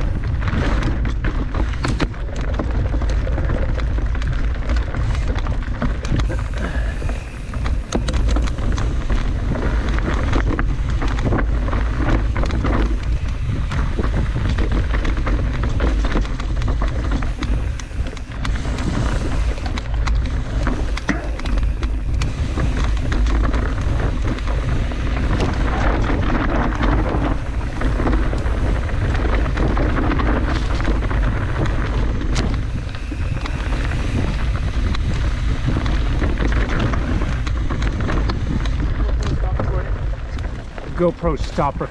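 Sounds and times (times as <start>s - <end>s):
wind buffeting microphone: 0.0s - 41.9s.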